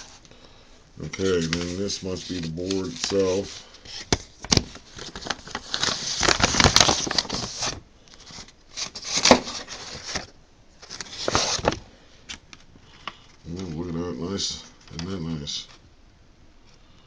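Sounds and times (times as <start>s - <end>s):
packaging crinkling: 1.1s - 12.4s.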